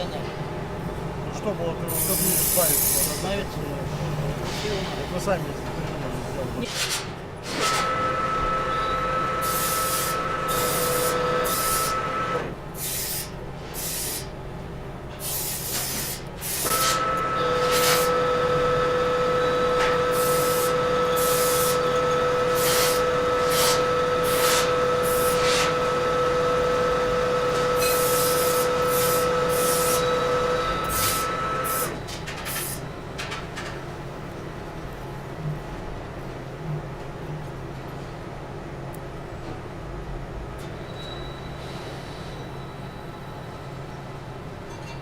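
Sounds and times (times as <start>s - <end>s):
lathe whine: 7.8s - 12.5s, 16.8s - 32.0s.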